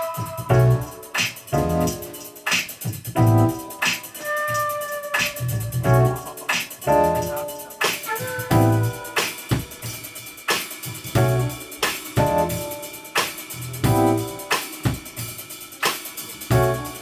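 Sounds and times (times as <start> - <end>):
keyboard chords: 0.0 - 4.2, 5.6 - 9.7, 11.2 - 15.1, 16.5 - 17.0
drum kit beat: 0.0 - 17.0
bass line: 0.4 - 2.0, 3.1 - 3.7, 5.3 - 6.3, 6.9 - 7.5, 8.5 - 9.2, 11.2 - 12.8, 13.6 - 14.5, 16.5 - 17.0.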